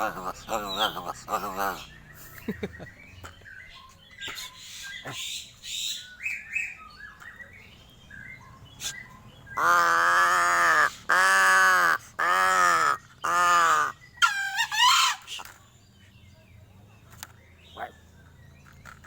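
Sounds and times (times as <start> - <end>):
crow chirps and gurgles: 0.0 - 3.6, 4.2 - 5.9, 8.8 - 15.6, 17.7 - 18.1
crow cawing harshly: 9.6 - 14.0.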